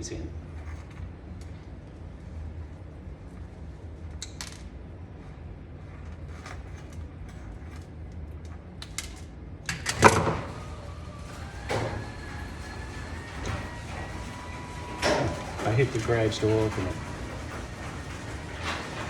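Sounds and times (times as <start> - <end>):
garage door opener running: 0.0 - 19.0
garage door clunk: 8.9 - 19.0.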